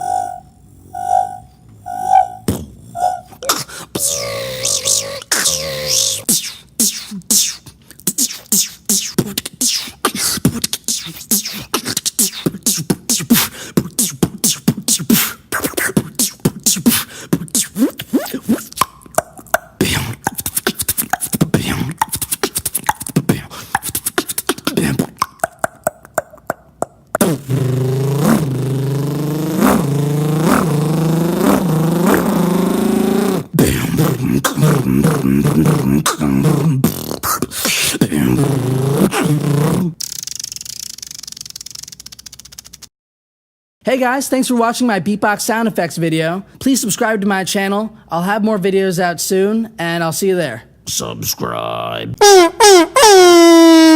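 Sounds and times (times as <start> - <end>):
beatboxing clicks and percussion: 2.5 - 42.9
buzzing tone with rising sweeps: 27.5 - 33.4.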